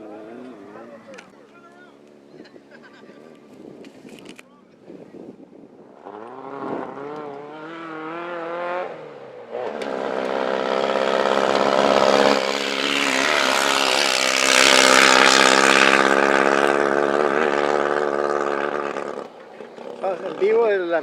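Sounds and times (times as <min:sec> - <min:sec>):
loud race car engine at high revs: 0:05.9 - 0:20.7
race car engine revving: 0:05.9 - 0:21.0.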